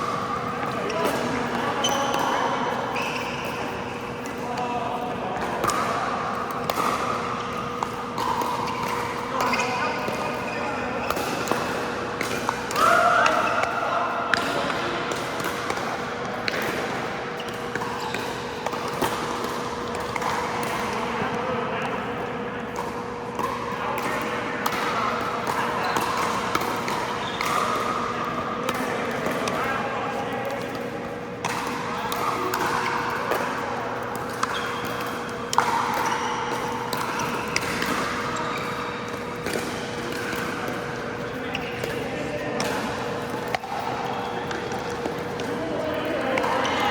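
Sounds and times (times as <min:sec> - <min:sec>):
ball bouncing on court: 0:05.4 - 0:21.3, 0:30.6 - 0:42.0.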